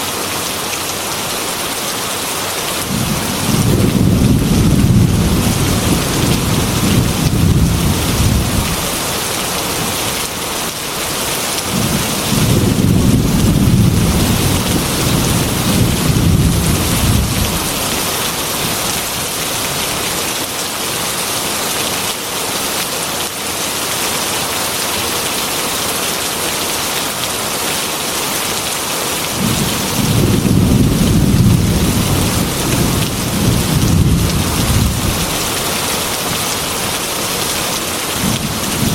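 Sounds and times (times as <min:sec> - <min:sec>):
heavy rain falling: 0:00.0 - 0:38.9
low thunder rumbling: 0:02.9 - 0:09.0, 0:11.7 - 0:18.8, 0:29.4 - 0:35.5.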